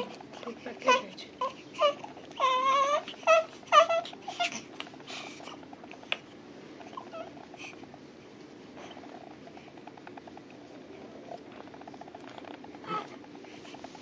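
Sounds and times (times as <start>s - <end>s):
baby crying: 0.9s - 4.6s.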